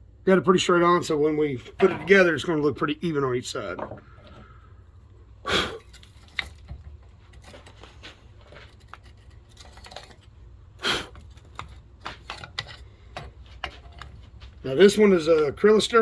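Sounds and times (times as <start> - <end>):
rustling scrapes: 5.8 - 14.7
small objects clicking and tapping: 11.2 - 14.6.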